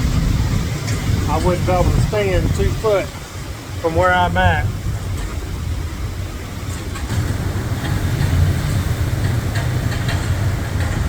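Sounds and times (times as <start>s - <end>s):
strong wind rumbling in gusts: 0.0s - 11.0s
faint knocks and rattles: 6.6s - 11.0s.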